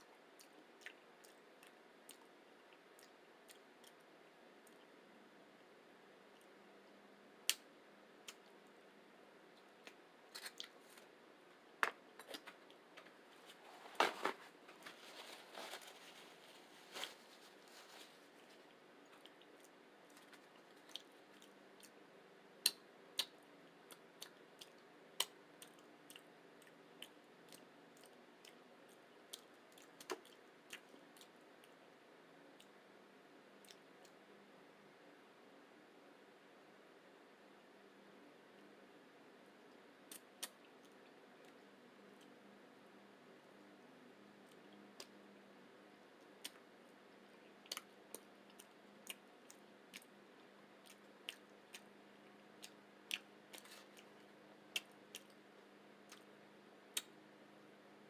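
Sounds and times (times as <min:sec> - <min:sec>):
mouth chewing sounds: 0:18.4 - 0:22.0, 0:47.3 - 0:50.2, 0:50.8 - 0:55.4.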